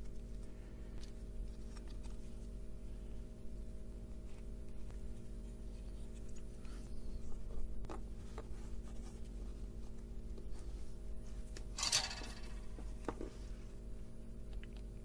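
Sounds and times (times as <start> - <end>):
small clicks and handling noises: 0.0 - 2.5
steady low hum: 0.0 - 15.0.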